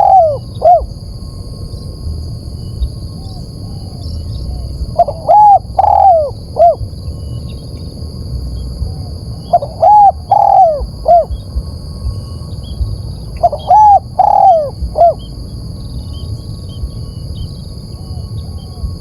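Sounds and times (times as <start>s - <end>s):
dove cooing: 0.0s - 0.9s, 3.2s - 6.8s, 8.9s - 11.5s, 13.4s - 15.4s
low background rumble: 0.0s - 19.0s.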